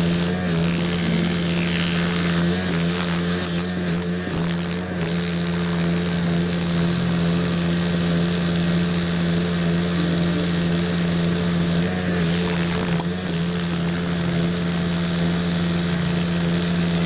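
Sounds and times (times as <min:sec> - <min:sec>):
heavy machine engine running: 0:00.0 - 0:03.9.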